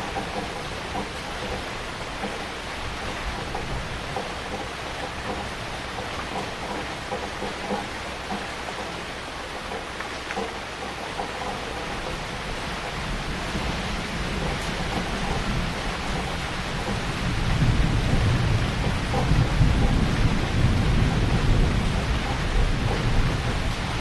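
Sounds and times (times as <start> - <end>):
heavy rain falling: 0.0 - 24.0.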